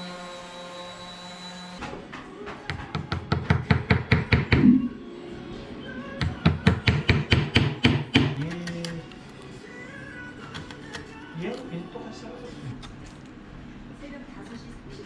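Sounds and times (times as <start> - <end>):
background music: 1.8 - 13.4.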